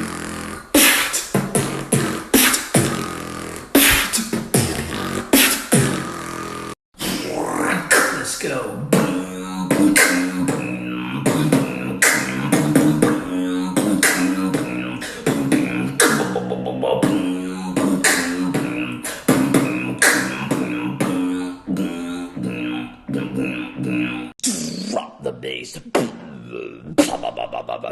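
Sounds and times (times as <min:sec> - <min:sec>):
beatboxing percussion: 0:00.0 - 0:27.9
hummed low bass drone: 0:09.1 - 0:24.3.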